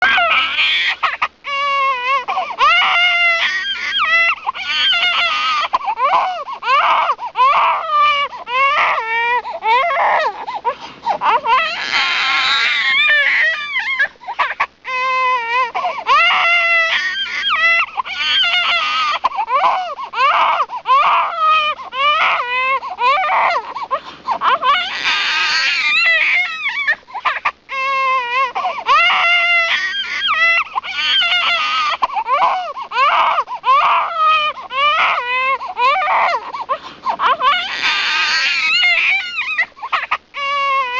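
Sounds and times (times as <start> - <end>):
baby crying: 0.0 - 40.9
baby gasping for breath: 10.4 - 11.2, 15.8 - 16.0, 23.6 - 24.4, 36.4 - 37.2.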